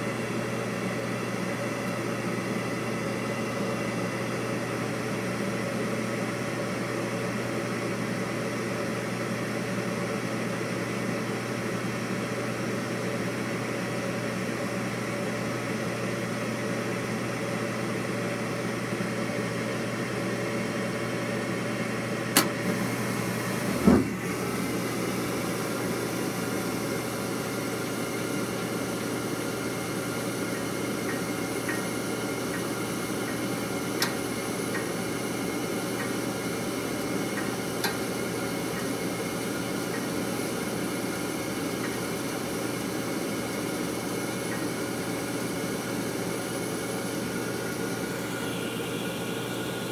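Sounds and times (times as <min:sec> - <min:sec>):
furnace humming: 0:00.0 - 0:49.9
short low thump: 0:23.8 - 0:24.2.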